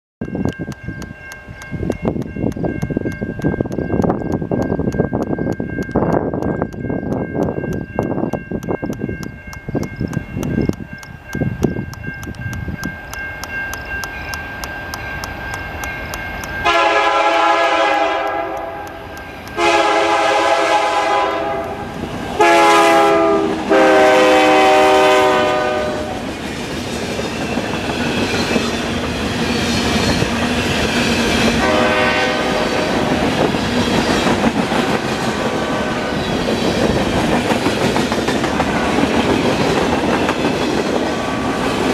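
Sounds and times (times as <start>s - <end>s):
crossing bell ringing: 0.2s - 38.0s
locomotive air horn blasts: 16.6s - 26.3s, 31.6s - 33.1s
train wheels clacking over rails: 23.8s - 41.9s.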